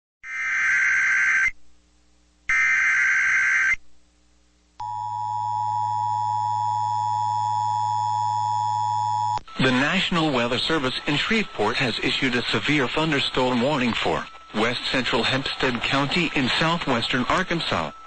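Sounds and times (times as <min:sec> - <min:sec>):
shrill digital warbling data bursts: 0:00.2 - 0:01.5.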